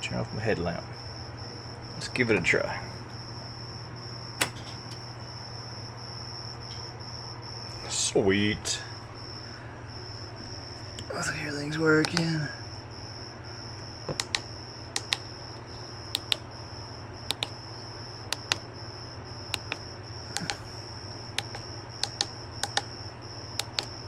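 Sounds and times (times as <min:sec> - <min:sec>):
switches clicking: 0:04.4 - 0:05.0, 0:12.0 - 0:12.3, 0:14.1 - 0:15.2, 0:16.1 - 0:16.4, 0:17.3 - 0:17.6, 0:18.3 - 0:18.6, 0:19.5 - 0:20.6, 0:21.4 - 0:22.9, 0:23.6 - 0:24.0.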